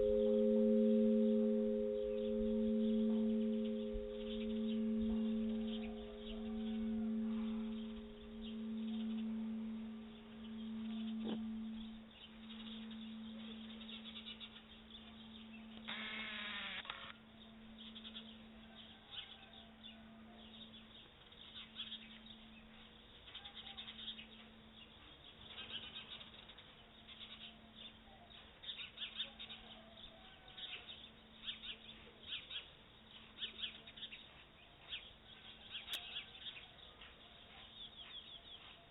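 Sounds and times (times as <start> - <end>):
church bell hum: 0.0 - 16.2, 17.2 - 25.2
birds chirping: 0.0 - 29.9.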